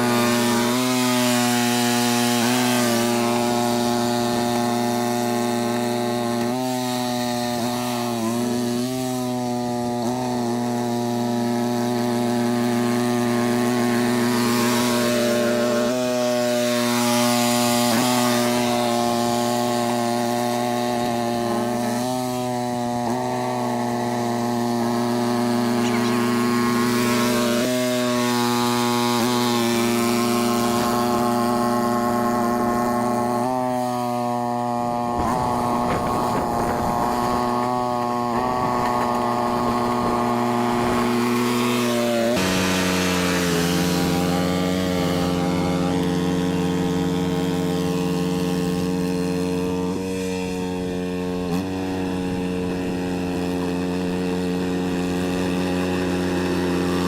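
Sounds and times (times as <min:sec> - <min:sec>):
snow blower engine running: 0:00.0 - 0:57.0.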